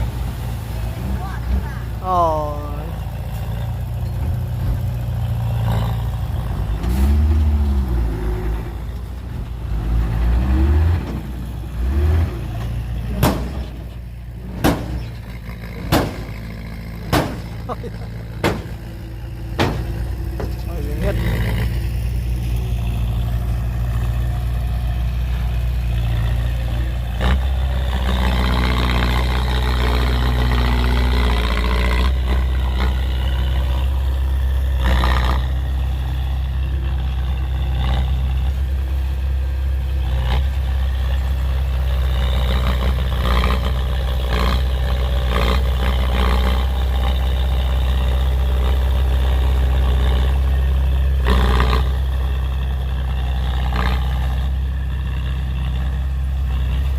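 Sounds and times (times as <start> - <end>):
diesel machinery droning: 0.0 - 56.9
sharp metal clanks and knocks: 13.1 - 13.9, 14.5 - 17.7, 18.4 - 20.7.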